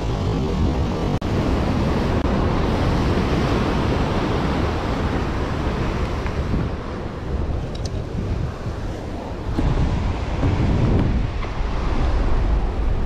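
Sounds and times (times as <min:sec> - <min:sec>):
sea surf washing on shore: 0:00.0 - 0:13.0.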